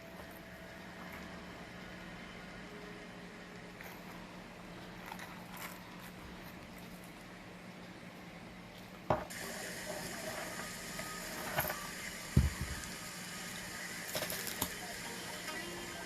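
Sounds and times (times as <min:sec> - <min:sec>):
steady hum: 0:00.0 - 0:16.0
hiss: 0:09.3 - 0:16.0.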